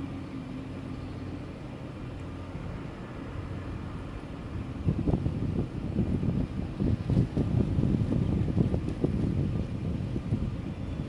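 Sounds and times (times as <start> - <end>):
wind buffeting microphone: 2.6 - 11.0.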